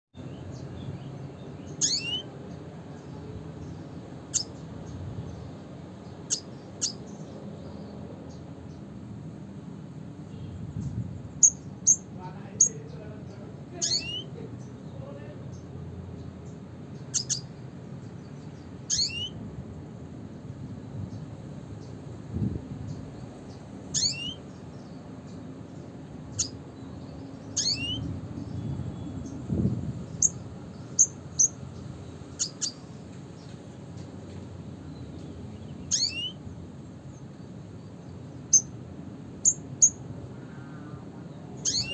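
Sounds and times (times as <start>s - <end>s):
bird calling: 1.7s - 2.3s, 6.2s - 7.0s, 13.7s - 14.5s, 17.0s - 17.5s, 18.9s - 19.4s, 23.9s - 24.5s, 26.3s - 26.6s, 27.5s - 28.1s, 32.3s - 33.0s, 35.8s - 36.4s, 41.6s - 41.9s
steady low rumble: 14.4s - 41.5s.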